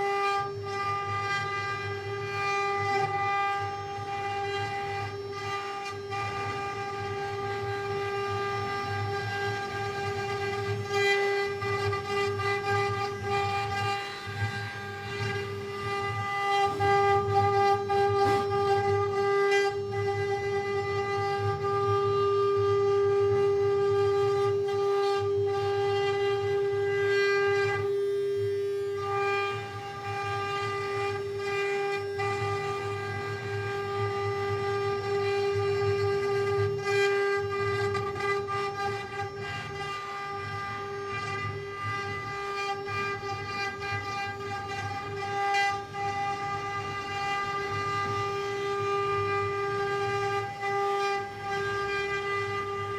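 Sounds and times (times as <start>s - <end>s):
wood router whining: 0.0s - 52.9s.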